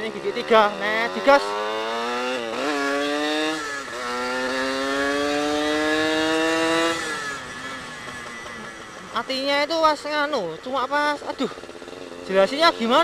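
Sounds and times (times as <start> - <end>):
two-stroke motorcycle accelerating: 0.0 - 13.0.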